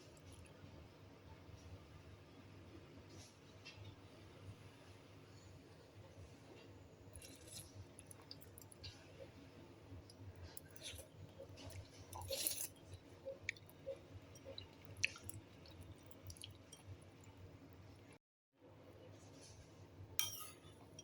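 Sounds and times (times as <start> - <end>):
person chewing food: 10.1 - 17.0.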